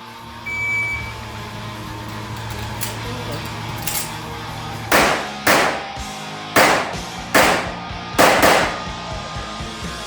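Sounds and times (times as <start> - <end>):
background music: 0.2 - 10.0
pistol shots: 4.9 - 9.0.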